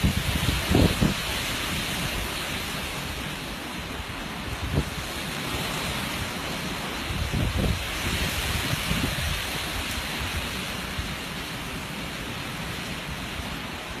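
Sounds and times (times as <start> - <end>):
steady rushing noise: 0.0 - 14.0.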